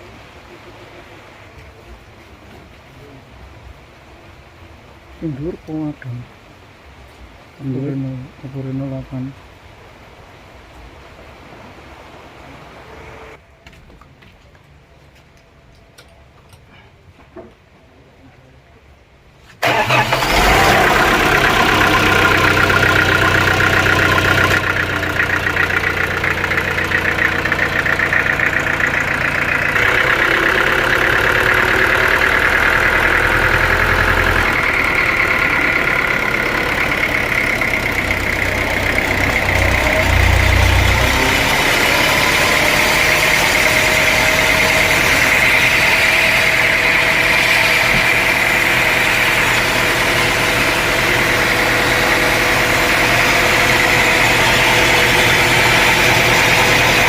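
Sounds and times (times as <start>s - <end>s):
sawmill machinery engine running: 19.6s - 57.0s.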